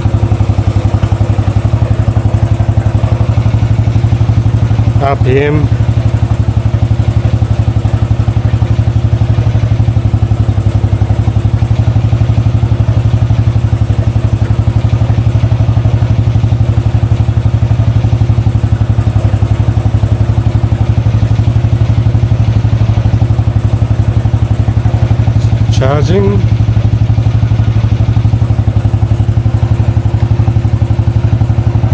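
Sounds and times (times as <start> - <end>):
single-cylinder engine running: 0.0 - 31.9.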